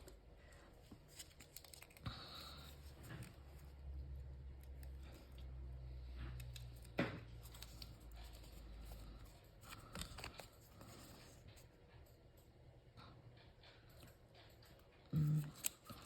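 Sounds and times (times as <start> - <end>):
paper rustling: 0.9 - 3.7, 6.8 - 11.4.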